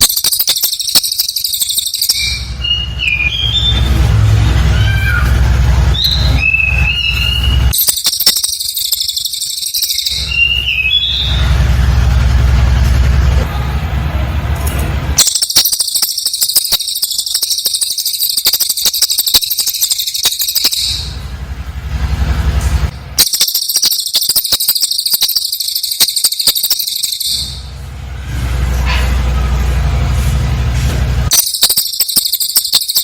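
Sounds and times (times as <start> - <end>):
bird trilling high-pitched: 0.0 - 4.0, 5.9 - 11.6, 15.2 - 21.3, 23.1 - 27.8, 31.3 - 33.0
low hum: 0.0 - 33.0.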